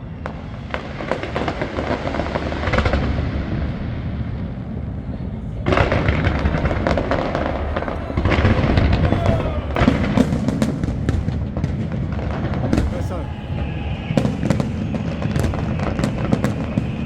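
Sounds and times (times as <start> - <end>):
fireworks booming: 0.0 - 17.0
fireworks crackling: 0.0 - 17.0.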